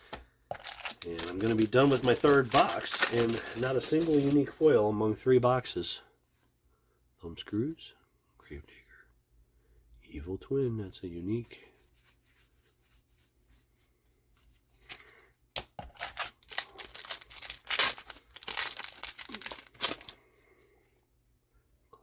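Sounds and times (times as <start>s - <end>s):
foil wrapper tearing and crinkling: 0.5s - 4.7s, 15.8s - 20.2s.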